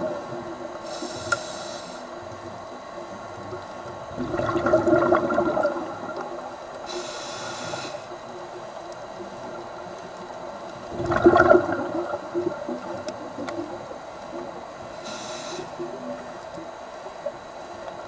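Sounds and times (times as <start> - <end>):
regulator hiss of inhaled air: 0.8 - 2.2, 6.8 - 8.2, 14.9 - 16.0
exhaled bubbles gurgling: 2.0 - 18.0.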